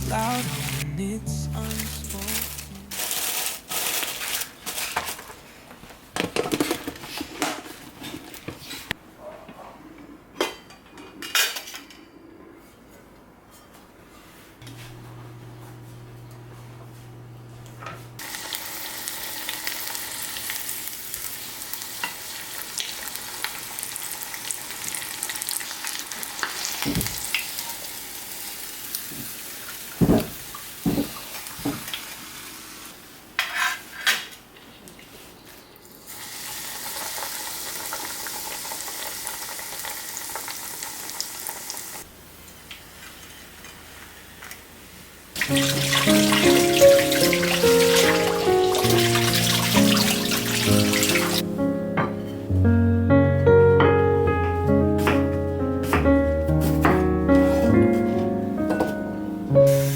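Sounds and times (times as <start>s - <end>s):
music: 0.0s - 3.1s, 45.4s - 59.9s
chicken sizzling in oil: 18.2s - 30.0s, 36.1s - 42.0s, 45.4s - 51.4s.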